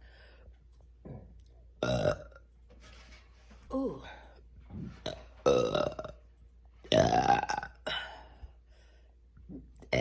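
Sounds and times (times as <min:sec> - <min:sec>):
person burping loudly: 0:01.8 - 0:02.4, 0:05.1 - 0:06.2, 0:06.9 - 0:08.3, 0:09.5 - 0:10.0.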